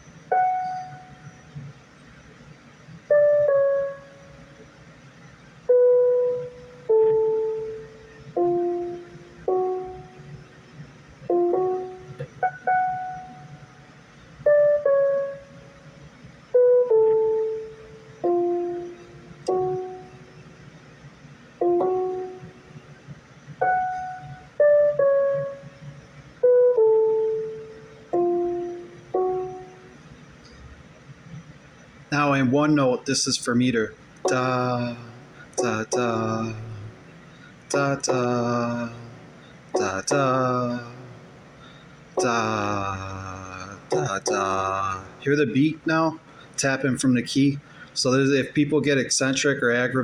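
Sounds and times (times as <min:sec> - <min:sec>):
single keyboard notes: 0:03.1 - 0:04.6, 0:05.7 - 0:10.6, 0:11.3 - 0:13.8, 0:14.4 - 0:15.9, 0:16.5 - 0:20.4, 0:21.6 - 0:23.0, 0:23.6 - 0:30.6, 0:34.2 - 0:41.3, 0:42.2 - 0:46.0.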